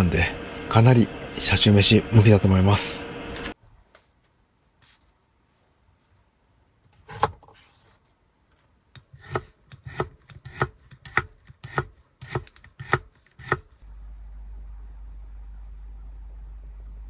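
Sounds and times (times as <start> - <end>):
steady low hum: 0.0 - 6.6, 13.8 - 17.0
knife chopping on cutting board: 9.2 - 13.7.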